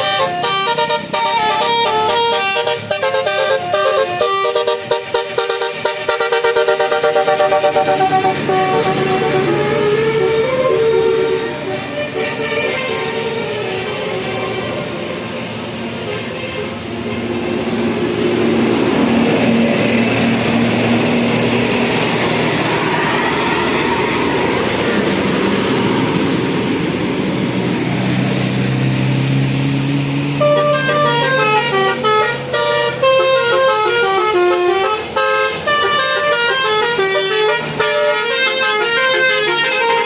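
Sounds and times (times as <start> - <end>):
musical bus horn melody: 0.0 - 18.4, 30.2 - 40.0
vehicle noise: 0.0 - 40.0.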